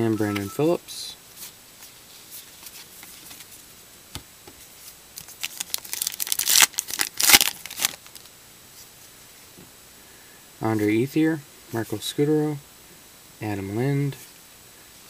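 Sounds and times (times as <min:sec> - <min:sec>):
card wrapper tearing and crinkling: 0:05.2 - 0:08.3.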